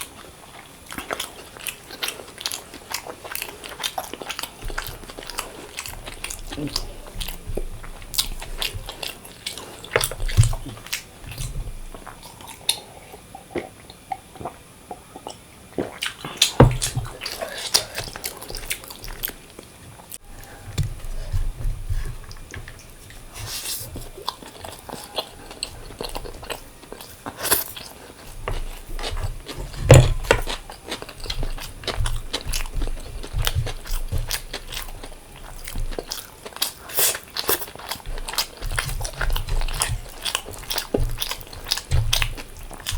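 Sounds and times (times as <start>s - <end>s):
chewing and biting food: 0.0s - 42.9s.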